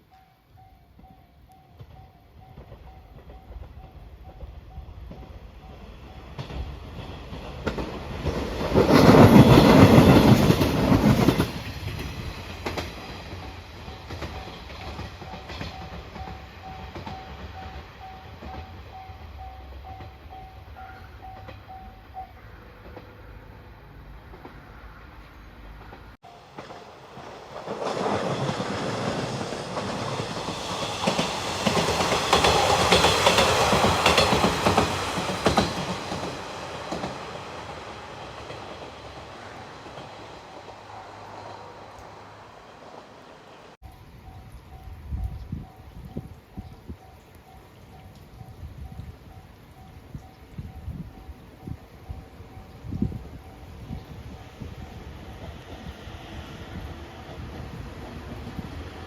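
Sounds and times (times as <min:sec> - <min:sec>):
crossing warning bell dinging: 0:00.0 - 0:07.8, 0:12.1 - 0:23.6, 0:43.8 - 0:56.7
train wheels clacking over rail joints: 0:01.8 - 0:20.5, 0:25.7 - 0:41.2.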